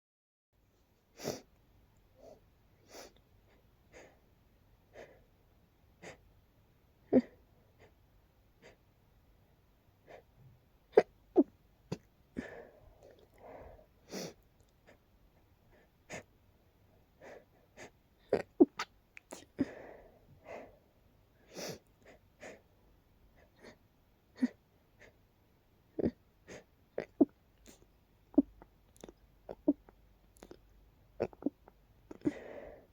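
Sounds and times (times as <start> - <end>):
wheezy breaths: 2.2 - 4.3, 4.9 - 5.3, 6.0 - 6.3, 8.6 - 8.8, 10.0 - 10.3, 12.4 - 15.0, 15.7 - 16.3, 17.1 - 18.4, 19.3 - 22.7, 23.3 - 23.8, 32.1 - 32.9.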